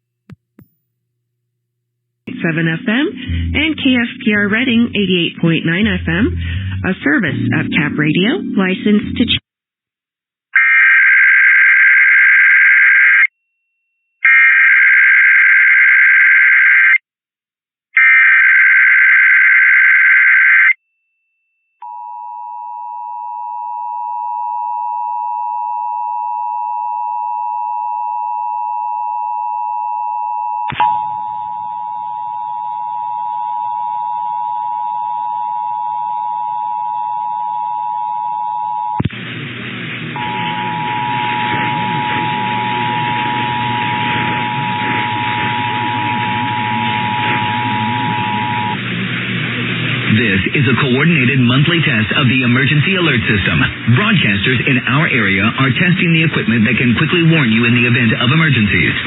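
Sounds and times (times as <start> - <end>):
two-tone attention signal: 40.2 - 48.8.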